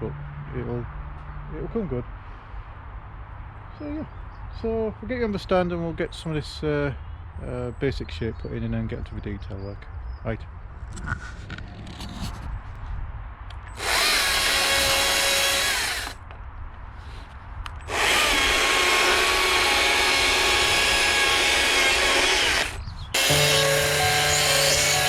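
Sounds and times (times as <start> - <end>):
chainsaw cutting log: 13.7 - 16.2, 17.8 - 25.0.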